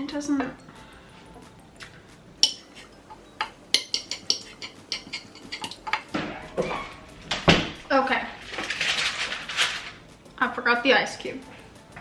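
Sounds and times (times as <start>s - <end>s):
metal utensil clinking on dish: 2.4s - 6.1s.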